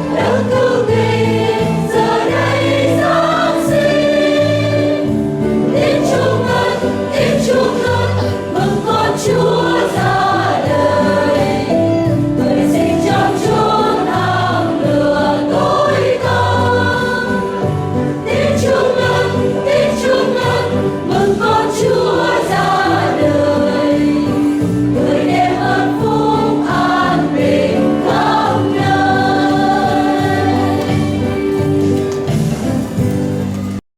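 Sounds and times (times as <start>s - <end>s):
church choir singing a hymn: 0.0s - 31.8s.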